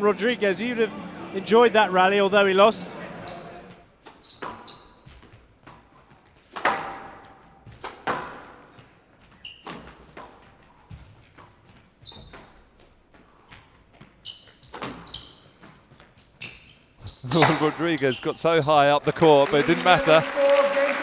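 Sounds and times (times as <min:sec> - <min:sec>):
shoes squeaking on court floor: 0:03.0 - 0:21.0
squash ball hits: 0:06.4 - 0:08.9.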